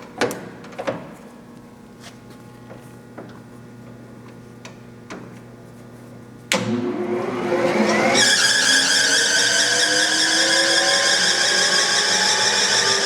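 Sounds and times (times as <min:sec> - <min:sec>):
lathe motor whine: 0:06.6 - 0:13.0.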